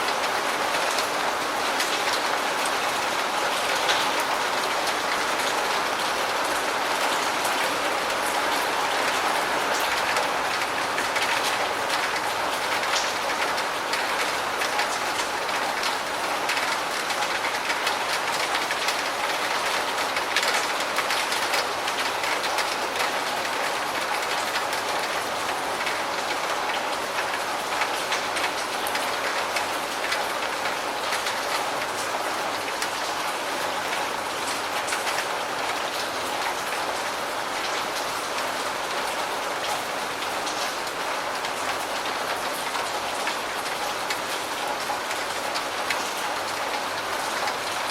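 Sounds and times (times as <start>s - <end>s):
steady rain falling: 0.0s - 47.9s.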